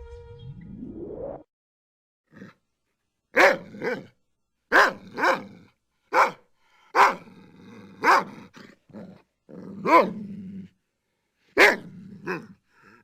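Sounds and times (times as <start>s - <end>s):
dog growling: 2.3s - 2.6s, 4.9s - 5.8s, 6.9s - 10.8s, 11.7s - 13.0s
dog barking: 3.3s - 4.1s, 4.7s - 7.3s, 8.0s - 9.2s, 9.8s - 10.2s, 11.6s - 12.6s.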